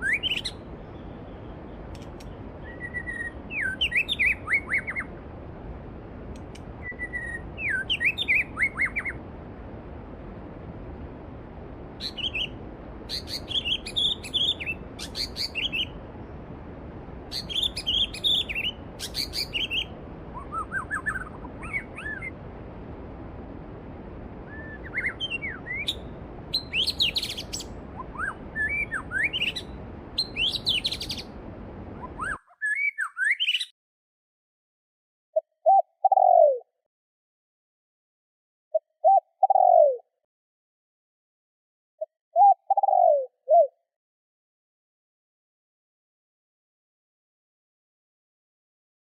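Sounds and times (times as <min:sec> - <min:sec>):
songbirds chirping and singing: 0:00.0 - 0:05.2, 0:12.0 - 0:16.0, 0:17.3 - 0:22.4, 0:32.0 - 0:33.7.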